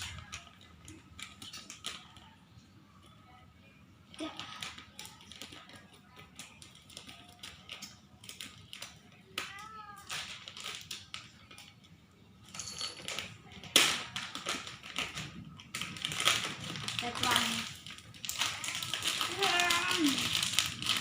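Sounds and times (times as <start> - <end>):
plastic packaging crinkling: 10.1 - 11.6, 13.0 - 21.0.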